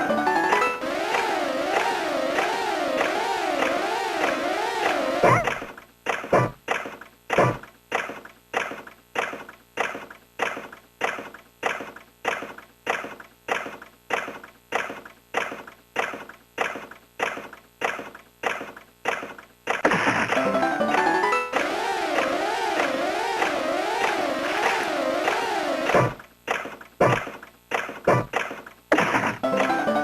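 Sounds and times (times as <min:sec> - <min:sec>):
pachinko machine clacking: 0:00.0 - 0:05.8, 0:20.3 - 0:26.2, 0:29.4 - 0:30.0.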